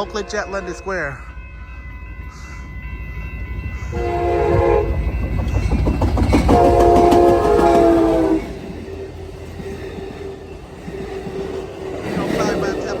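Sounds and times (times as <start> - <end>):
train horn: 0.0 - 1.0, 3.8 - 5.2, 6.4 - 8.6
train rumbling past: 0.0 - 13.0.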